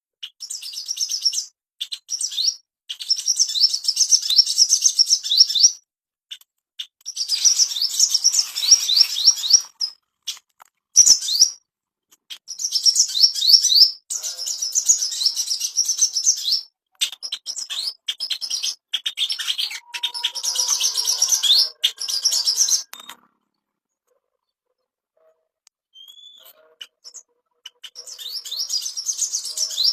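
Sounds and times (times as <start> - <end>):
bird singing high chirps: 0.2 - 5.8, 6.8 - 10.4, 11.0 - 11.6, 12.3 - 23.3, 25.9 - 29.9.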